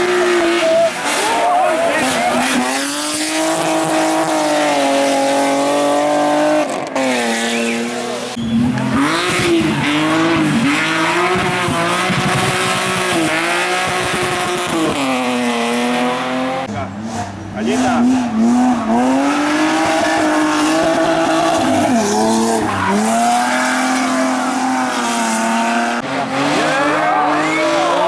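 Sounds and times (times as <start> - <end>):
race car engine at high revs: 0.0 - 28.0.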